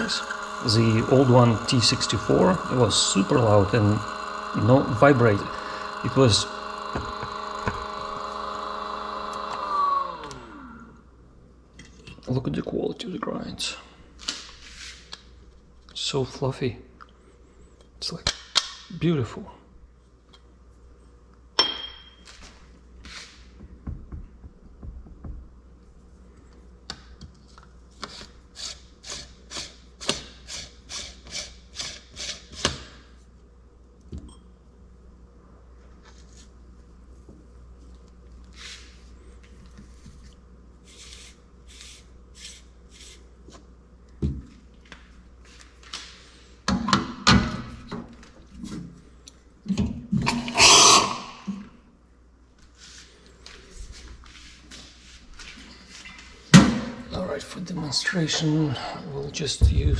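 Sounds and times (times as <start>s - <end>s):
knocks: 23.6s - 25.5s.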